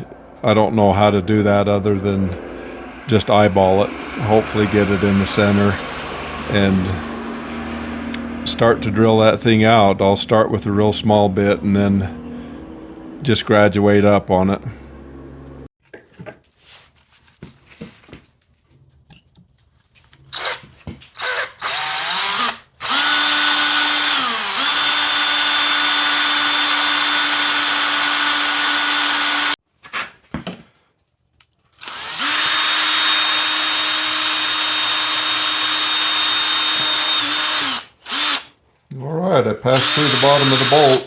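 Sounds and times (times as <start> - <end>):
electric drill drilling metal: 20.3 - 29.6, 31.8 - 38.5, 39.7 - 41.0.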